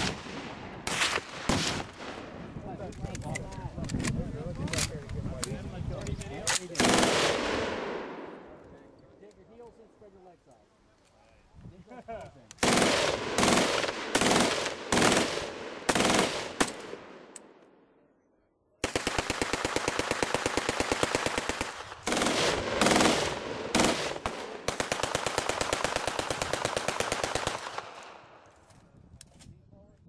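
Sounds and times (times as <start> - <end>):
machine-gun fire: 0.0 - 2.2, 6.8 - 8.2, 12.6 - 17.2, 18.8 - 28.0.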